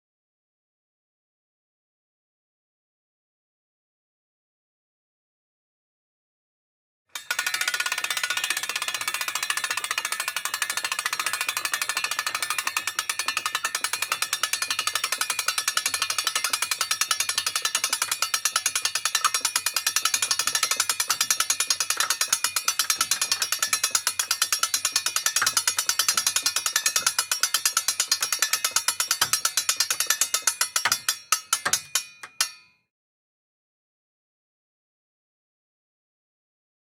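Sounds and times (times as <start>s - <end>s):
hand crank clicking: 7.2s - 32.6s.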